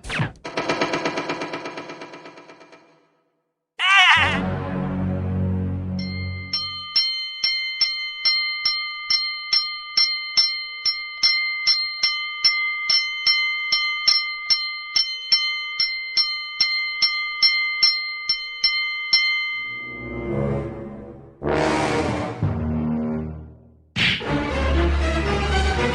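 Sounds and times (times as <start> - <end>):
bell struck rapidly: 6.0 - 20.2.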